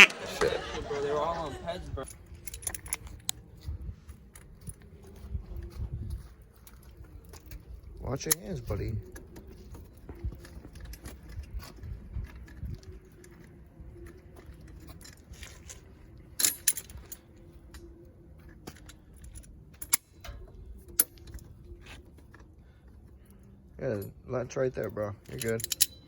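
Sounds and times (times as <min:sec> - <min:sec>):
hand tools clinking on metal: 0:02.0 - 0:03.4, 0:06.6 - 0:11.8, 0:12.8 - 0:17.9, 0:18.5 - 0:22.0, 0:23.9 - 0:26.0.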